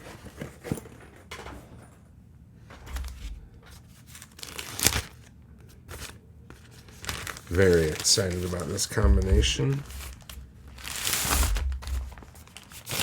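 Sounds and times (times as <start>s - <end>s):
packaging rustling and crinkling: 2.7s - 13.0s.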